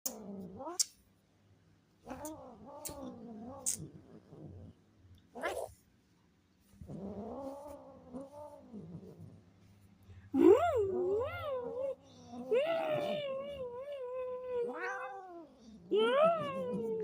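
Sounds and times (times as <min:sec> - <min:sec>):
cat yowling: 0:11.1 - 0:15.5.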